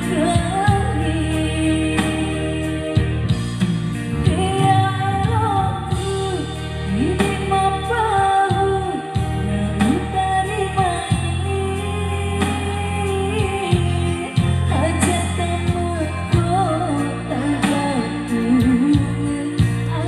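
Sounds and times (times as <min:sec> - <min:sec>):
bass and keyboard backing: 0:00.0 - 0:20.0
person singing: 0:04.1 - 0:20.0.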